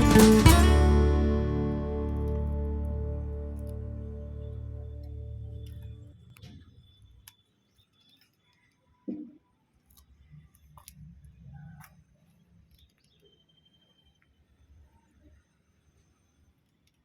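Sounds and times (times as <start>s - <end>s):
faint clicks and ticks: 16.4s - 17.0s.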